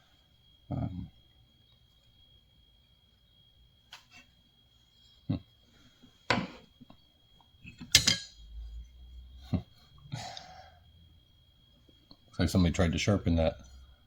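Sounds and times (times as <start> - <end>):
hand tools clinking on table: 7.8 - 8.4.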